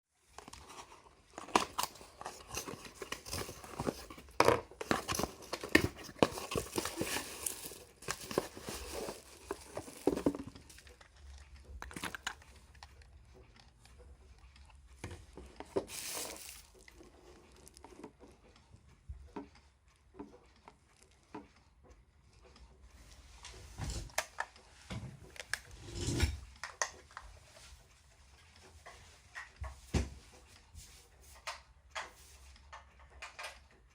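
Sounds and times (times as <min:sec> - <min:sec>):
handling clicks and knocks: 0:00.4 - 0:11.0
packaging tearing and crinkling: 0:01.3 - 0:11.0, 0:15.8 - 0:18.0.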